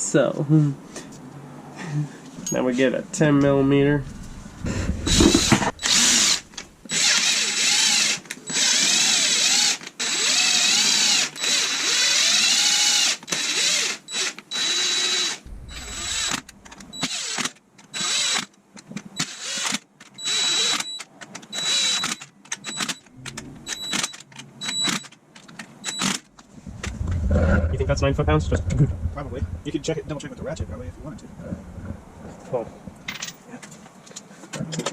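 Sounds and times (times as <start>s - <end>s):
power driver whirring: 4.6s - 18.5s.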